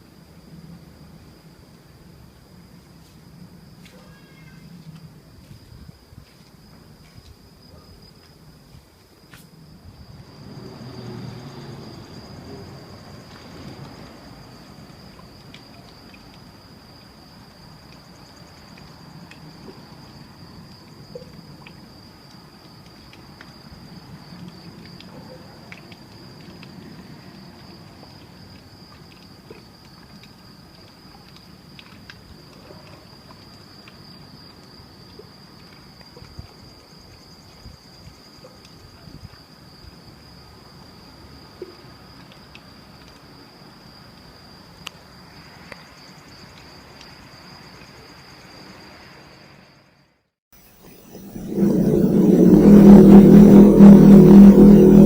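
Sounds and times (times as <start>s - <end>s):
crickets trilling: 0.0s - 55.0s
steady low rumble: 50.8s - 55.0s.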